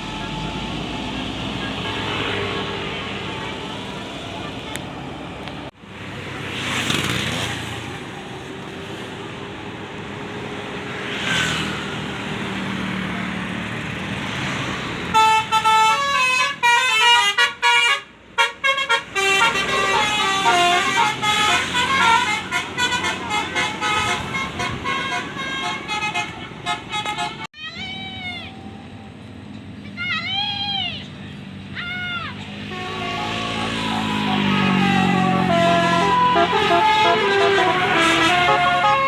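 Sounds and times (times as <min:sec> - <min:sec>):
passing vehicle road noise: 0:00.0 - 0:17.2, 0:18.1 - 0:39.0
multi-tone musical bus horn: 0:15.1 - 0:27.5, 0:32.5 - 0:39.0.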